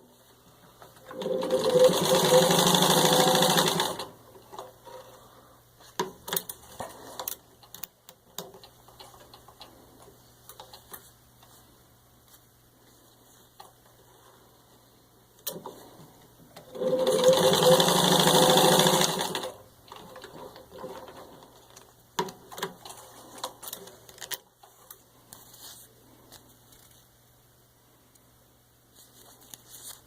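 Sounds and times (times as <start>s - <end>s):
sewing machine running fast: 1.2s - 4.1s, 16.8s - 19.6s.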